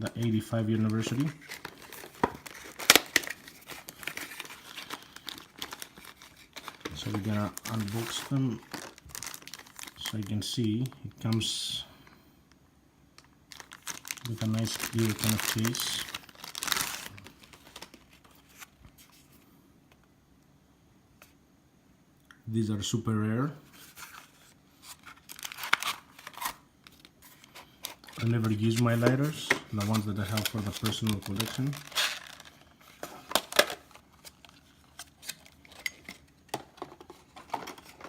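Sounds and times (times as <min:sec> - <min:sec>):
plastic packaging crinkling: 0:00.1 - 0:11.0, 0:13.2 - 0:19.3, 0:23.7 - 0:38.0.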